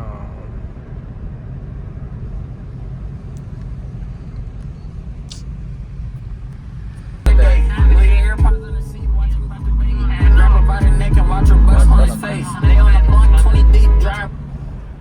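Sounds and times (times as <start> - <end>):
car road and wind noise: 0.0 - 15.0
loud hip-hop music: 7.3 - 14.4.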